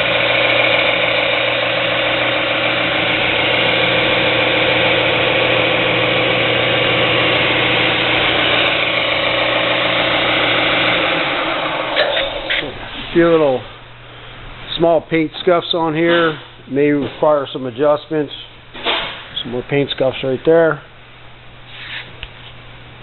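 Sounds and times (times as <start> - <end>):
belt and disc sander running: 0.0 - 12.7.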